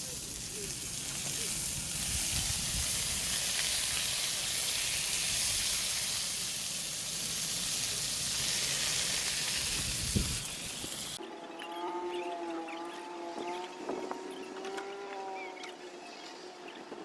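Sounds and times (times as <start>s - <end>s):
food sizzling in a pan: 0.0s - 11.2s.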